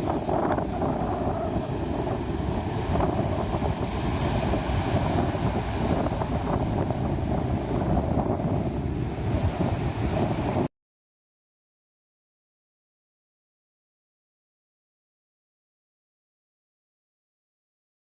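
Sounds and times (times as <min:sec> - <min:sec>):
ocean surf breaking: 0:00.0 - 0:10.7
wind buffeting the microphone: 0:00.0 - 0:10.7.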